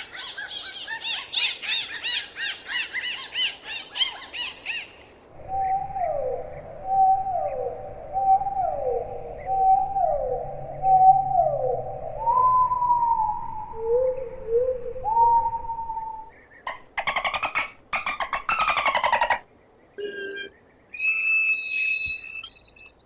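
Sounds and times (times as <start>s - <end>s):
dolphin whistles: 20.9s - 23.0s.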